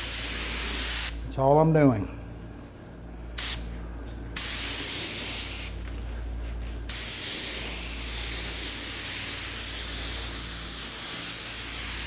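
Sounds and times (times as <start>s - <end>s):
spray gun hissing: 0.0s - 1.2s, 4.4s - 5.8s, 6.9s - 12.0s
steady low hum: 0.0s - 12.0s.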